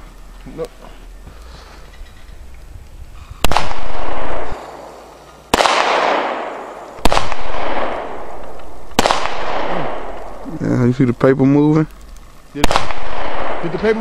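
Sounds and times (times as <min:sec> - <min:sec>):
rolling echo: 0:03.3 - 0:10.9, 0:11.9 - 0:14.0
handgun shots: 0:05.6 - 0:10.3.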